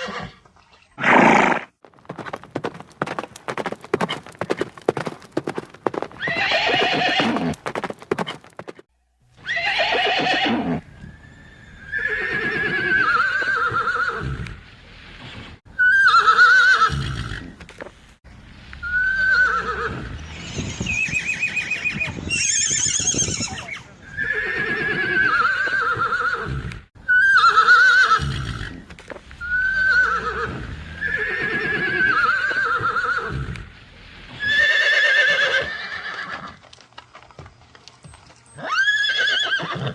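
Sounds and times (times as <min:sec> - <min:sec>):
horses whinnying: 0:00.0 - 0:00.4, 0:01.0 - 0:02.4, 0:05.9 - 0:08.5, 0:09.4 - 0:14.5, 0:15.2 - 0:17.6, 0:18.8 - 0:33.6, 0:34.3 - 0:36.6, 0:38.5 - 0:39.9.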